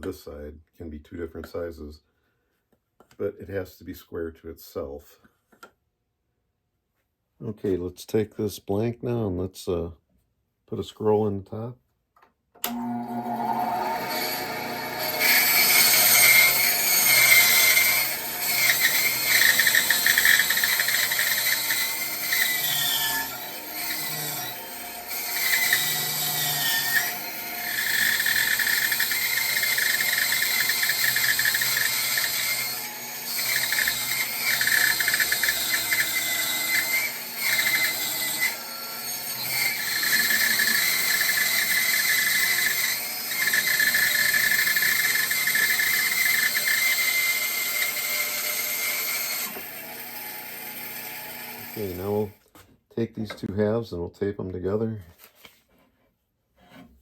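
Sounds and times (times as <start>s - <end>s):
bandsaw cutting wood: 12.6s - 52.4s.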